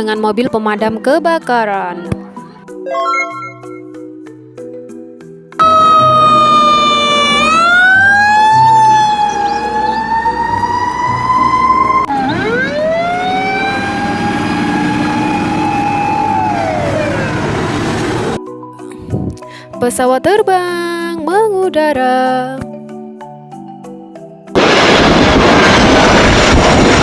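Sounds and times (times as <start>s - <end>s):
siren winding up and down: 2.9s - 3.9s, 5.6s - 18.4s
fire engine siren wailing: 5.6s - 18.4s.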